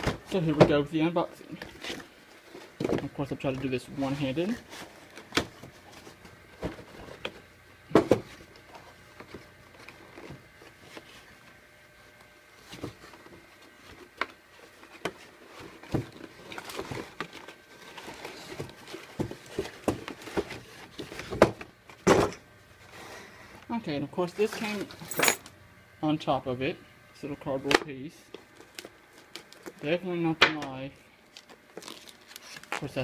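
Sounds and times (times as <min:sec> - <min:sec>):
packaging rustling and scraping: 0:01.4 - 0:07.5, 0:08.1 - 0:11.5, 0:12.2 - 0:25.4, 0:28.3 - 0:30.0, 0:31.1 - 0:33.0.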